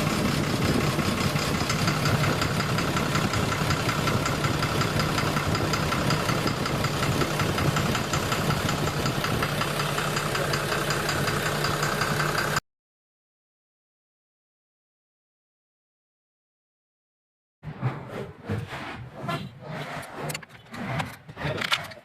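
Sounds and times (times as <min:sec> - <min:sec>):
engine idling with knocking: 0:00.0 - 0:12.6.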